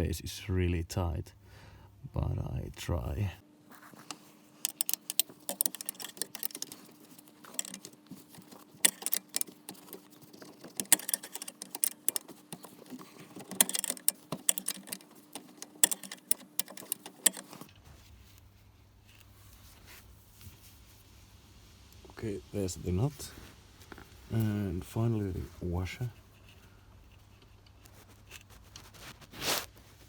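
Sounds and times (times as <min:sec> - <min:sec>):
hand tools clinking on metal: 0:04.7 - 0:17.6
rapid sharp ratchet clicks: 0:04.7 - 0:17.6.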